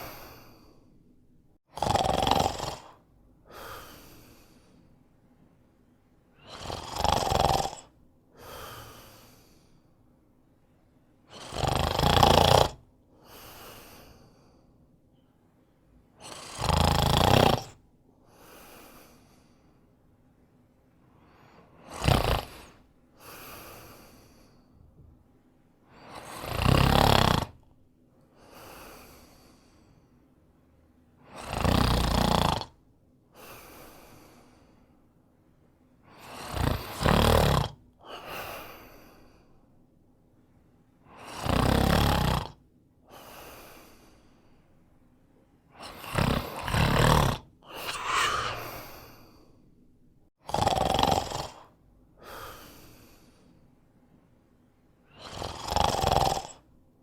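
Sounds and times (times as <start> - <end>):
soft breathing: 0.0 - 1.2, 3.4 - 5.6, 13.2 - 15.9, 18.2 - 25.1, 28.2 - 30.4, 33.3 - 35.2, 38.1 - 39.8, 43.0 - 45.1, 45.7 - 49.8, 52.2 - 54.1
man snoring loudly: 1.7 - 4.0, 6.5 - 7.9, 11.3 - 12.8, 16.2 - 17.8, 21.8 - 22.7, 26.2 - 27.6, 31.3 - 32.8, 36.2 - 37.8, 41.2 - 42.6, 45.8 - 49.3, 50.4 - 51.7, 55.1 - 56.6.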